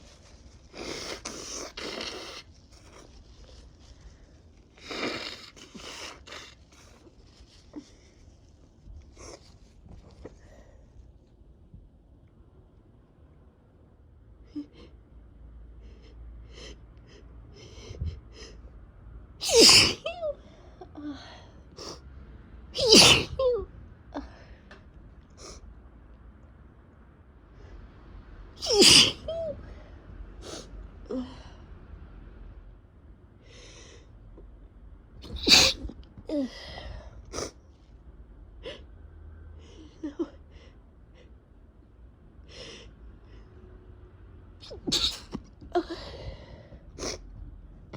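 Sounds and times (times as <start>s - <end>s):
person sniffing: 0.7s - 3.2s, 4.8s - 7.1s, 28.6s - 29.3s, 35.2s - 35.9s, 44.6s - 45.4s
person sneezing: 19.4s - 20.1s, 22.8s - 23.4s, 28.6s - 29.4s, 35.2s - 35.9s, 44.6s - 45.5s.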